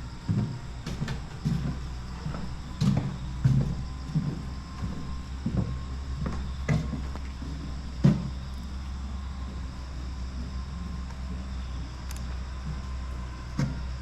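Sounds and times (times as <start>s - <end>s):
steady low hum: 0.0s - 14.0s
footsteps of person walking: 0.2s - 11.3s.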